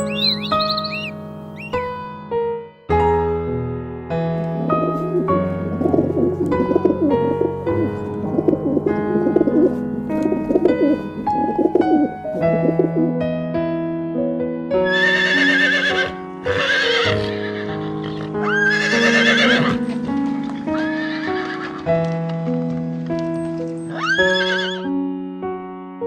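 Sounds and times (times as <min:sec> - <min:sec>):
piano music: 0:00.0 - 0:26.0
horse whinnying: 0:14.9 - 0:20.0, 0:20.8 - 0:21.8, 0:23.9 - 0:24.9.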